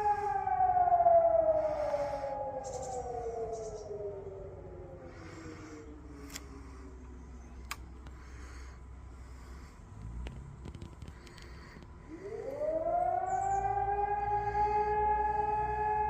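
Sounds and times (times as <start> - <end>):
fire siren winding down: 0.0 - 6.9, 10.6 - 16.0.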